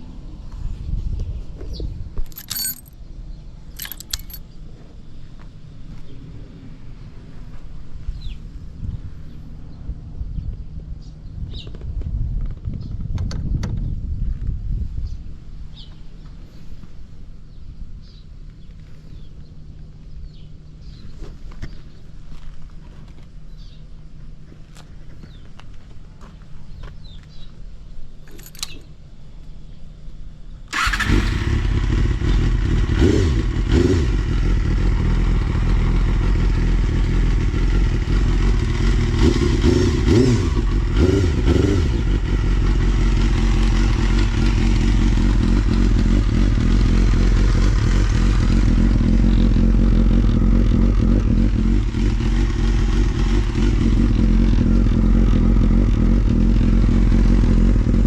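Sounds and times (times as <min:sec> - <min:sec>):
motorcycle engine starting and idling: 0:02.2 - 0:06.0, 0:28.3 - 0:29.0, 0:30.6 - 0:58.0
engine revving: 0:30.7 - 0:58.0.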